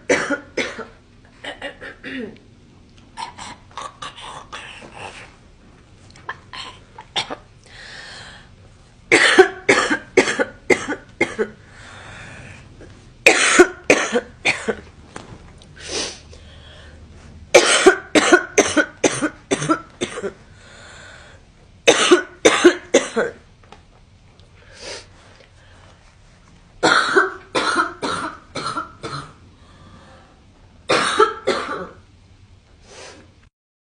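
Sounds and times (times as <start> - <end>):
girl coughing: 0.1 - 2.4, 6.3 - 7.5, 9.1 - 11.6, 13.3 - 14.8, 17.5 - 20.4, 21.9 - 23.4, 26.8 - 29.4, 30.9 - 32.0.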